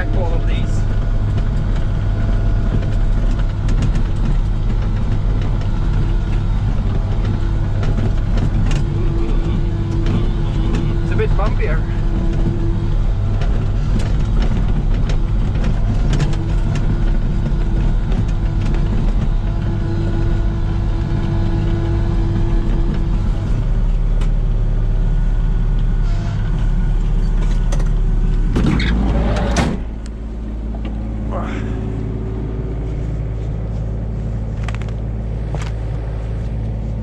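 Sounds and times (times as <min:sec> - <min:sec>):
mini excavator diesel engine: 0:00.0 - 0:37.0
clicks and rattles: 0:00.8 - 0:21.8.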